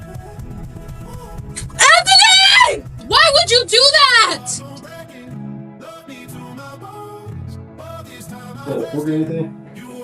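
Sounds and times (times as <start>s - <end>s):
background music with low beat: 0.0s - 5.5s.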